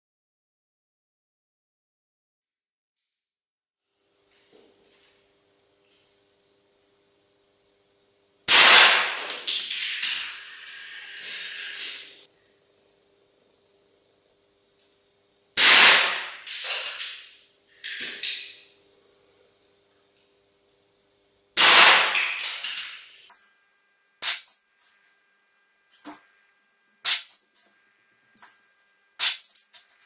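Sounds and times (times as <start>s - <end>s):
air pistol shots: 8.5s - 10.3s, 15.6s - 17.2s, 21.6s - 23.1s, 24.2s - 24.6s, 27.1s - 27.6s, 29.2s - 29.9s.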